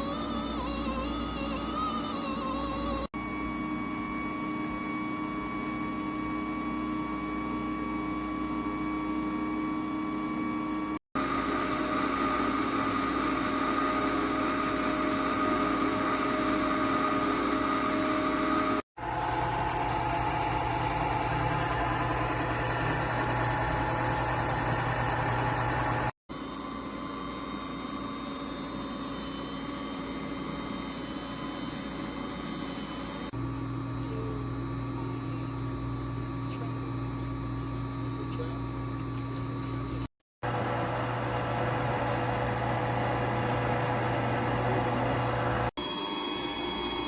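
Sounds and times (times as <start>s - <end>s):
ice cream maker humming: 0.0s - 26.1s, 40.4s - 45.8s.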